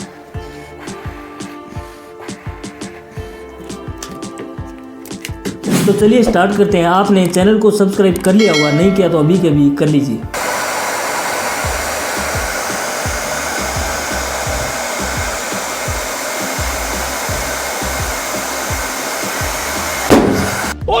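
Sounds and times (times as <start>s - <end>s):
balloon bursting: 5.6s - 6.8s, 10.4s - 20.9s
hair dryer blowing: 10.4s - 20.9s.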